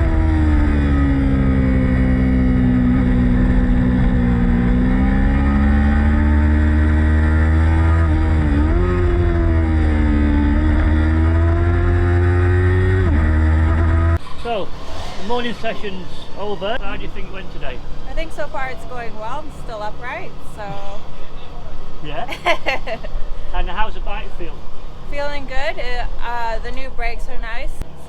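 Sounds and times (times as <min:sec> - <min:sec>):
steady low rumble: 0:00.0 - 0:14.8
motorcycle engine revving high: 0:00.0 - 0:28.0.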